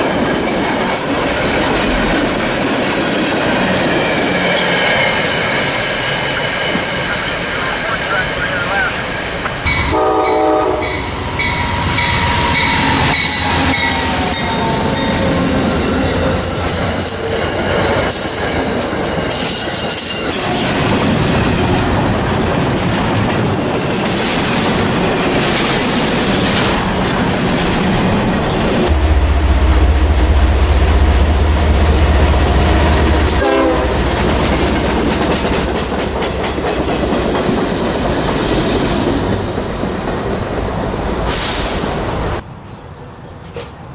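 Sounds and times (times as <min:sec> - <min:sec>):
train clattering on rails: 0:00.0 - 0:42.4
train horn: 0:09.7 - 0:15.4, 0:28.9 - 0:34.7
deep engine rumble: 0:28.9 - 0:34.6.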